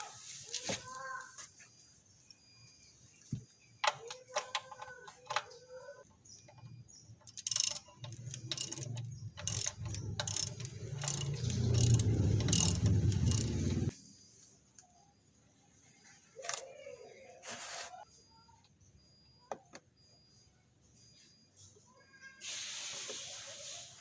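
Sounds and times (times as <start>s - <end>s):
ratchet wrench clicking: 7.2s - 13.9s.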